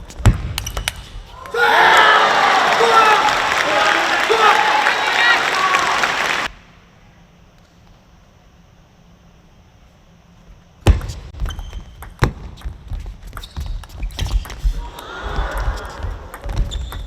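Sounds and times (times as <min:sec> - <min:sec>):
crowd noise: 0:01.5 - 0:06.6.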